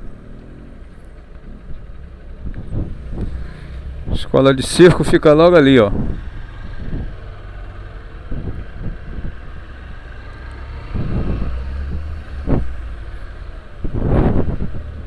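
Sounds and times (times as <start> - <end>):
vehicle rumble in motion: 0.0 - 15.0
wind buffeting microphone: 1.6 - 15.0.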